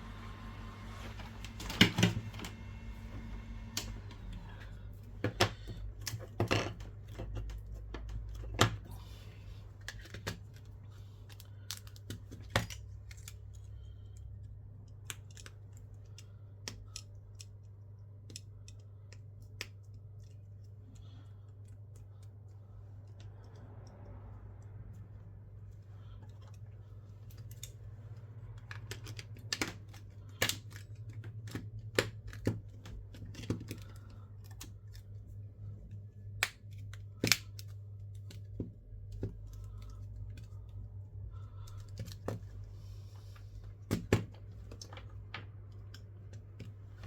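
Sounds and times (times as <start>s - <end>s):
steady low hum: 0.0s - 47.0s
small tools clicking and tapping: 11.2s - 24.2s.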